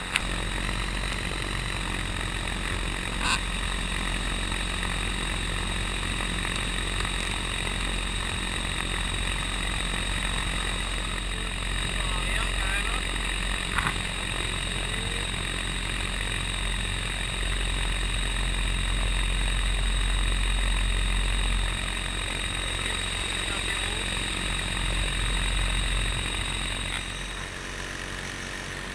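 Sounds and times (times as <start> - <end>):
electric motor whine: 0.0 - 28.9
propeller rumble: 0.0 - 28.9.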